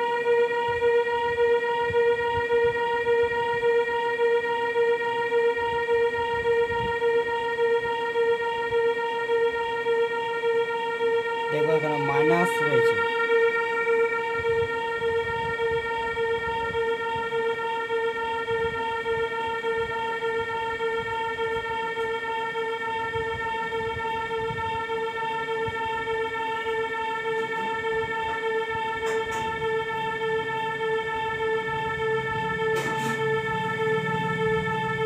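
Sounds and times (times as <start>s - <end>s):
electronic keyboard long note: 0.0s - 35.0s
low drone: 8.2s - 35.0s.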